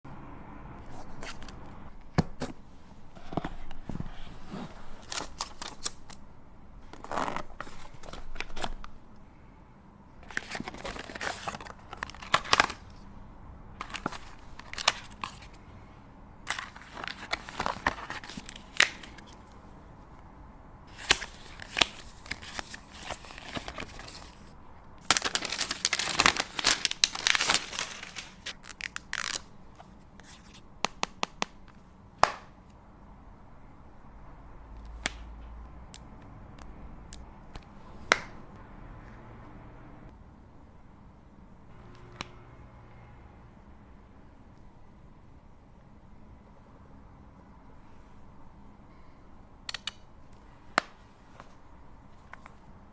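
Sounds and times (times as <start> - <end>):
paper wrap crinkling and tearing: 20.9 - 29.5.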